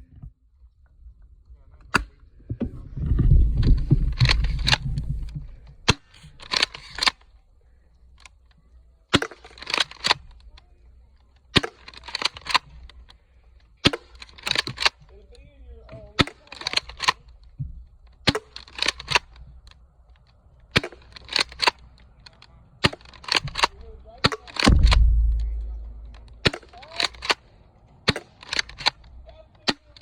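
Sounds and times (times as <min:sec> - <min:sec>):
clattering clicks: 0:24.4 - 0:27.4
airsoft shotgun firing: 0:24.6 - 0:27.4.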